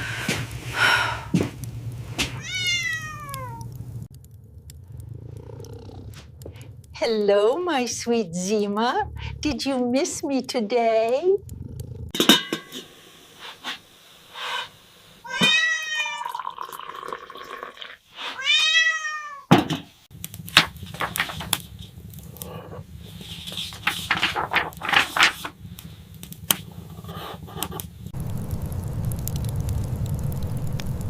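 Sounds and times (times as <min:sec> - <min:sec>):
low steady rumble: 0:00.0 - 0:12.8, 0:20.1 - 0:31.0
small crackles and clicks: 0:01.4 - 0:12.1, 0:20.1 - 0:31.0
kitten meowing: 0:02.4 - 0:03.6.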